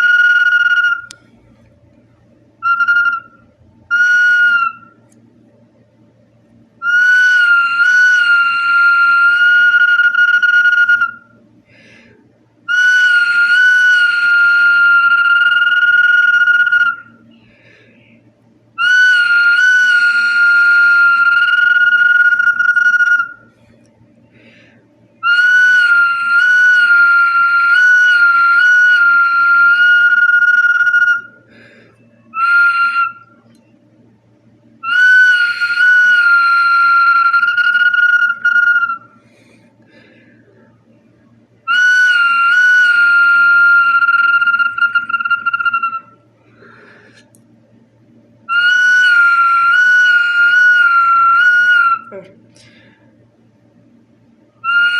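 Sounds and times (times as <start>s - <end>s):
bottle whistling high notes: 0.0s - 1.2s, 2.6s - 5.0s, 6.8s - 11.4s, 12.7s - 17.1s, 18.8s - 23.5s, 25.2s - 31.4s, 32.4s - 33.4s, 34.8s - 39.2s, 41.7s - 46.2s, 54.6s - 54.9s.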